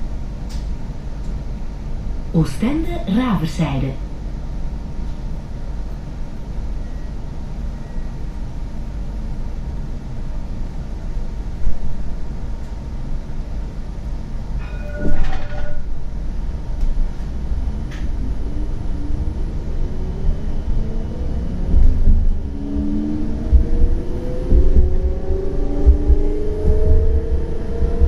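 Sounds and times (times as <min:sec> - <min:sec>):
tram rumbling: 0:00.0 - 0:28.0
shrill multi-pitch tone: 0:14.6 - 0:15.9.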